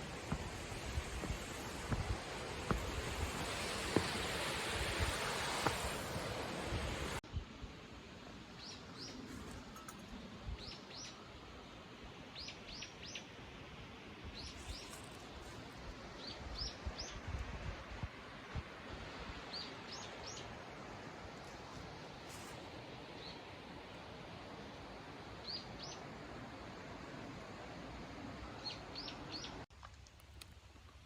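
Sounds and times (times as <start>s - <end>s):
steady rushing noise: 0.0s - 7.2s.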